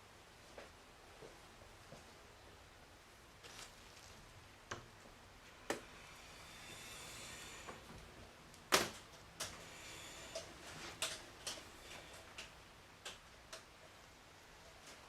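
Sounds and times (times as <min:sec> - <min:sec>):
faint hiss: 0:05.5 - 0:08.3, 0:09.5 - 0:11.0.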